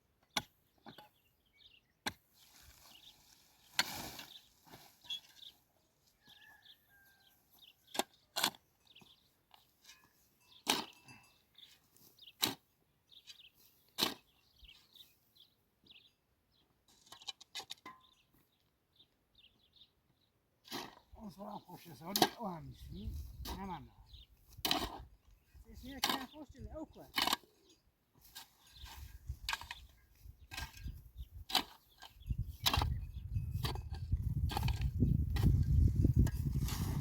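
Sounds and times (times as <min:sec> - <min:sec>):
faint bird chirps: 0:06.2 - 0:08.0.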